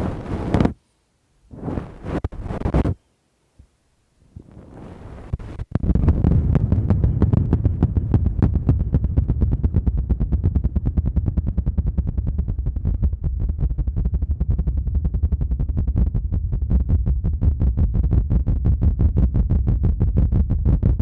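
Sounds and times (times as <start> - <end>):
fast fluttering pulses on microphone: 1.5 - 3.0.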